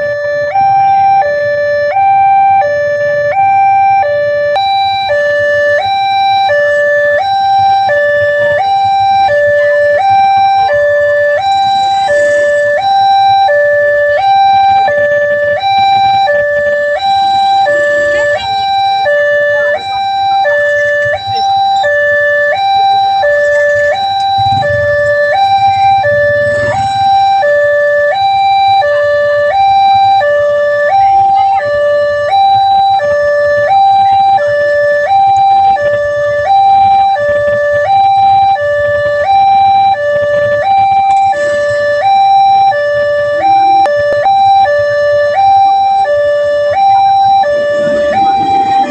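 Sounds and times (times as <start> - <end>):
two-tone level crossing alarm: 0.0 - 48.9.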